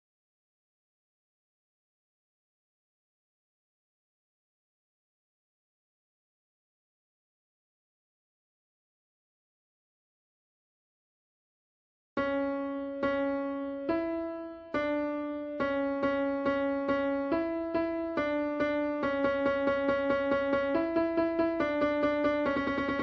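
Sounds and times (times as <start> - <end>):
synthesized piano rapid notes: 12.2 - 23.0.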